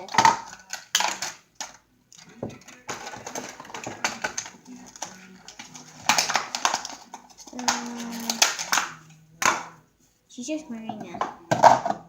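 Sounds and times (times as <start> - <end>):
sharp plastic clicks: 0.0 - 9.7
plastic toy pieces fitted together: 0.0 - 9.8
rustling: 0.0 - 11.6.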